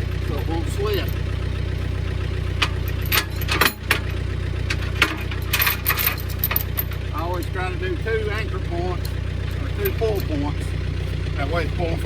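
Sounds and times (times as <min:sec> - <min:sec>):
chain clinking and rattling: 0:00.0 - 0:07.8, 0:08.9 - 0:10.5
tractor engine idling: 0:00.0 - 0:12.0.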